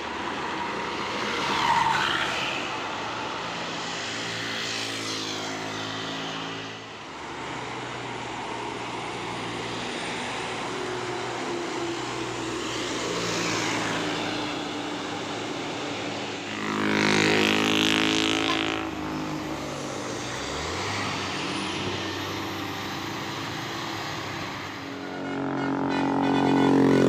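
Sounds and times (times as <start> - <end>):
road traffic engines under load: 0.0 - 27.0.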